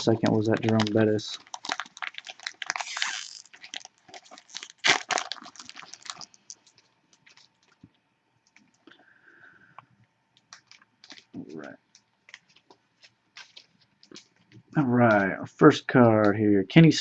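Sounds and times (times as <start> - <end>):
cards being handled: 0.0 - 1.4
wrapper crinkling being torn open: 0.0 - 7.9, 10.4 - 14.6.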